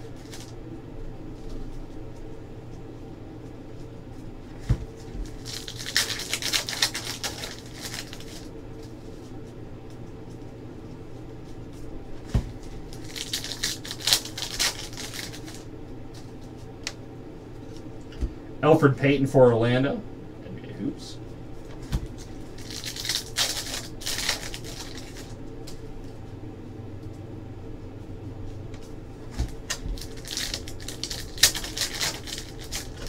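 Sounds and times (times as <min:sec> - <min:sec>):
steady low hum: 0:00.0 - 0:33.0
cards riffling: 0:05.0 - 0:09.0, 0:12.6 - 0:17.0, 0:21.8 - 0:25.8, 0:28.8 - 0:33.0.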